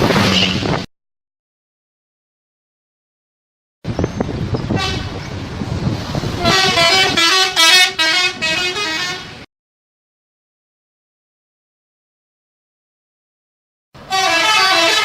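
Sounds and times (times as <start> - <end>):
bus engine noise: 0.0 - 0.9, 3.8 - 9.5, 14.0 - 15.0
multi-tone musical bus horn: 4.7 - 5.2, 6.2 - 9.5, 14.0 - 15.0.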